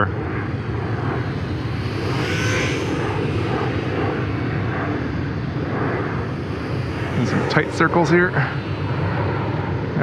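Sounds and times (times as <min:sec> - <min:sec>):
steady low rumble: 0:00.0 - 0:10.0
model plane motor whining: 0:00.7 - 0:05.0.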